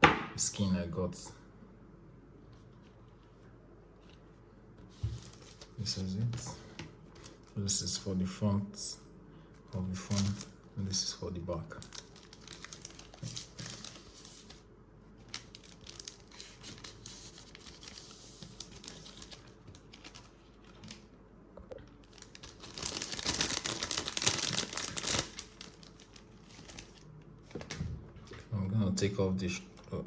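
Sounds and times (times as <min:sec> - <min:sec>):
plastic sheets crinkling: 0:04.9 - 0:07.6, 0:09.8 - 0:21.1, 0:21.9 - 0:28.4.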